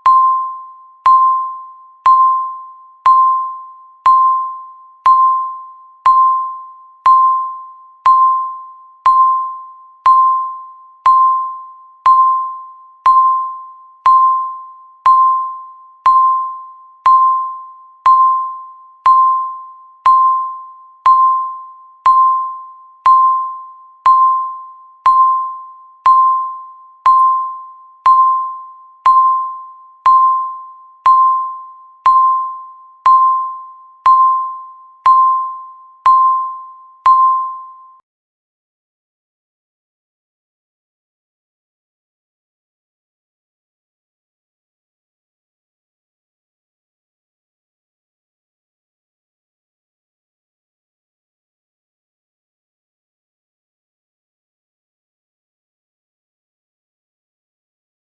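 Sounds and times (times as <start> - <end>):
electronic timer beep: 0.0 - 38.0.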